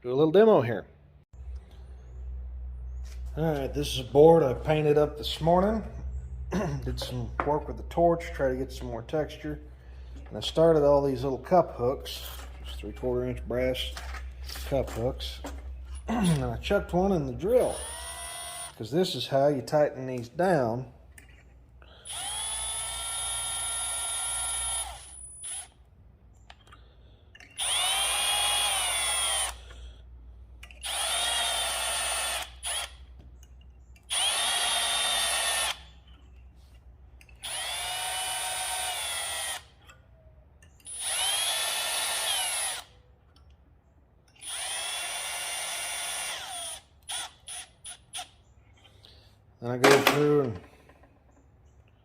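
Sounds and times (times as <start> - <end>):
cordless drill whine: 17.5 - 18.8, 22.0 - 25.8, 27.4 - 29.8, 30.7 - 33.0, 34.1 - 36.0, 37.4 - 39.8, 40.8 - 42.9, 44.4 - 48.3.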